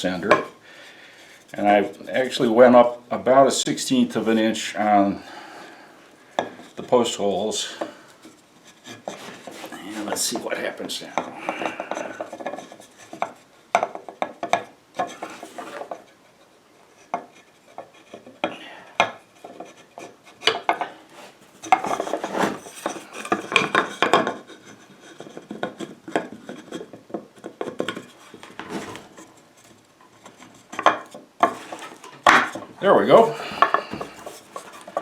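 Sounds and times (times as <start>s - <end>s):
wooden panel knocking and scraping: 17.1s - 29.4s, 30.1s - 35.0s.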